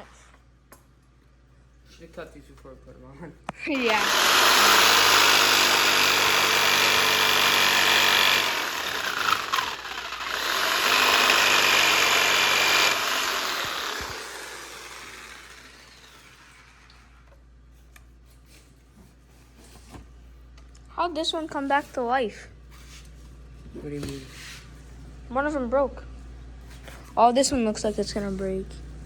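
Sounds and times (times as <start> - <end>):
electric power tool running: 3.7 - 17.3.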